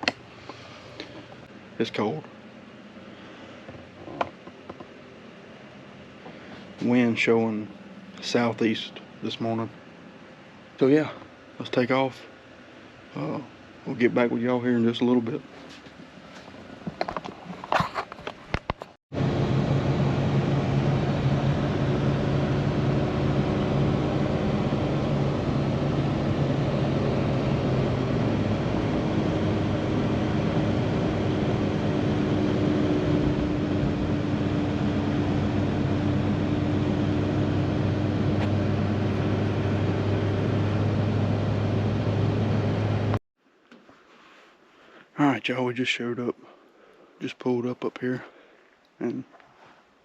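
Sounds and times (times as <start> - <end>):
road noise: 19.2 - 43.2
truck engine hum: 19.2 - 43.2.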